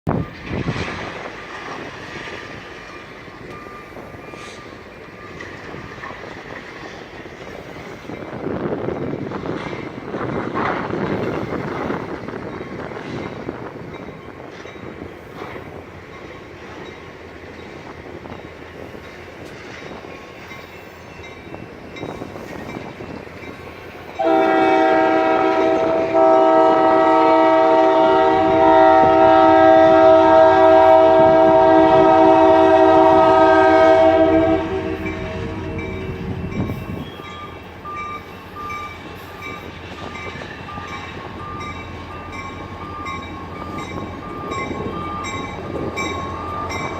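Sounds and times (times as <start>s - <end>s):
freight train rumbling past: 0.1s - 46.9s
locomotive air horn chord: 24.2s - 36.0s.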